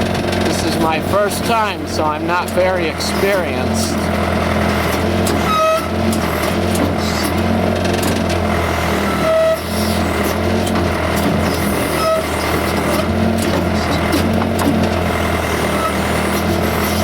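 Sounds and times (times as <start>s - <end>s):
backhoe diesel engine running: 0.0s - 17.0s
high-pitched squeals: 5.3s - 6.0s.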